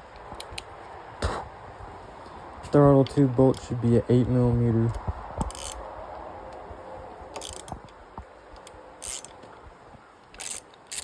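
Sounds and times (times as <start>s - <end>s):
hand ratchet clicking: 5.4s - 5.8s, 7.4s - 7.8s, 8.6s - 9.4s, 10.4s - 11.0s.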